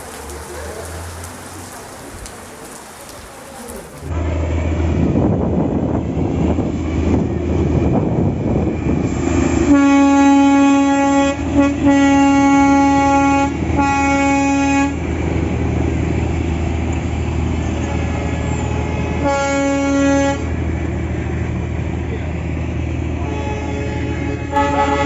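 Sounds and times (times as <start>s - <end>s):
train engine rumble: 0.0s - 25.0s
train horn blasts: 9.6s - 15.1s, 17.6s - 20.6s, 23.2s - 25.0s.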